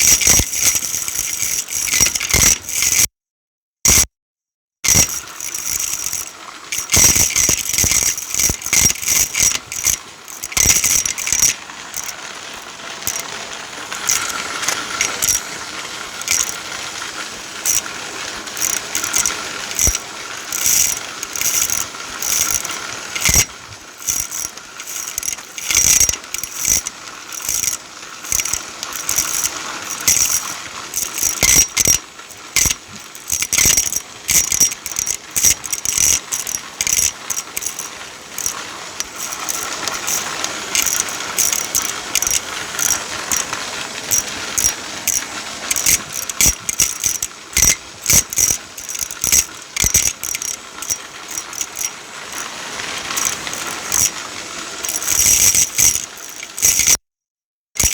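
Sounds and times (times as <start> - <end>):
mechanical clicking and rattling: 0.0 - 3.1, 3.9 - 4.1, 4.8 - 57.0.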